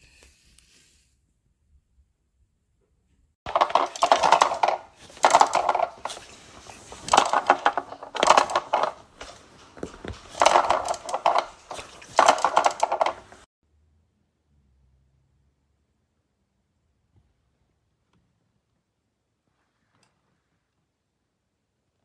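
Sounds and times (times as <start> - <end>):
hard objects clattering: 3.5 - 13.5.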